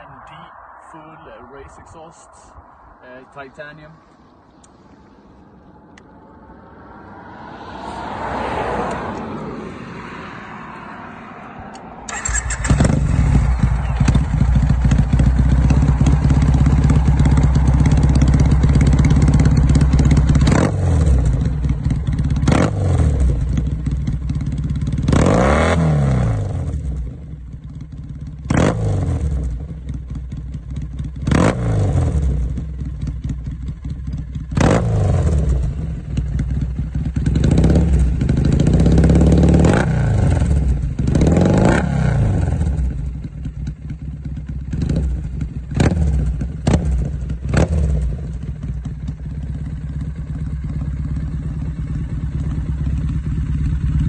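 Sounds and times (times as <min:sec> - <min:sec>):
motorcycle engine revving: 0:00.0 - 0:54.0
motorcycle throttle blips: 0:11.7 - 0:25.2.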